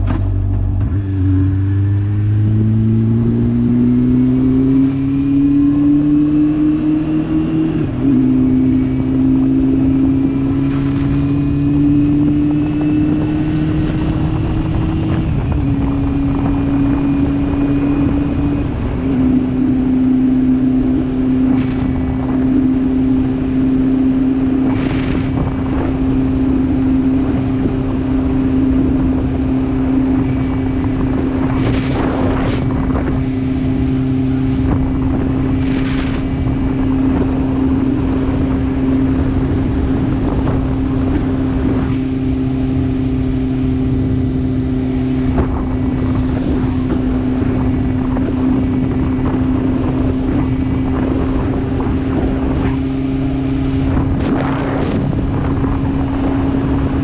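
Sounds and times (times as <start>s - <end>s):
engine running steadily: 0.0s - 57.0s
wind noise on microphone: 0.0s - 57.0s.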